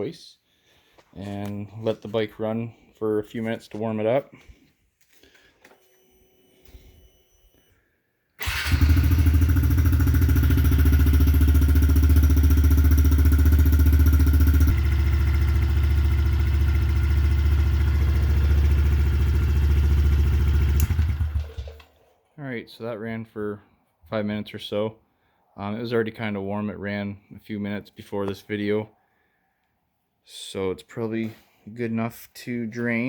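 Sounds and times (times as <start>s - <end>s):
motorcycle engine running steadily: 8.4s - 21.8s.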